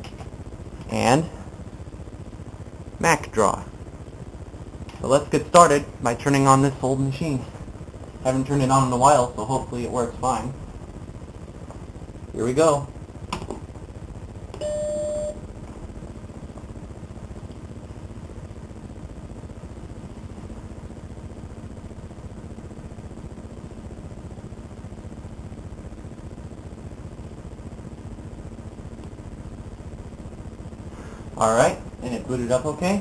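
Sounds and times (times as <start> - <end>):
computer running hum: 0.0 - 33.0
computer startup beep: 14.6 - 15.4.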